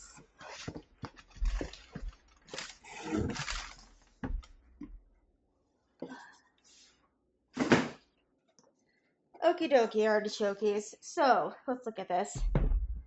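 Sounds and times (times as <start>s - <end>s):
rustling of cardboard and wrapping: 0.0s - 4.6s
knocks and thumps: 12.4s - 13.0s.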